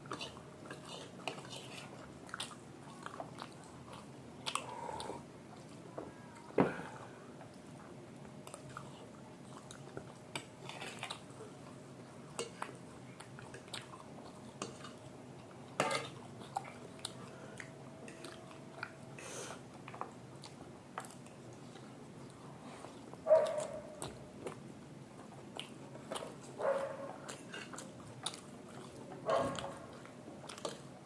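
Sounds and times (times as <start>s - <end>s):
person chewing food: 0.0s - 5.8s, 6.8s - 31.0s.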